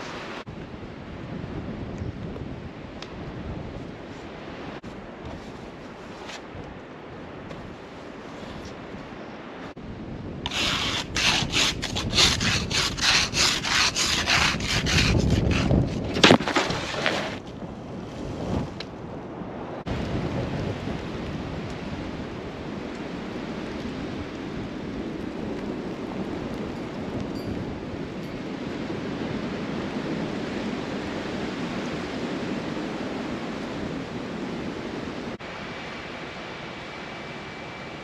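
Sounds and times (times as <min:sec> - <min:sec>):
steady wind noise: 0:00.0 - 0:38.0.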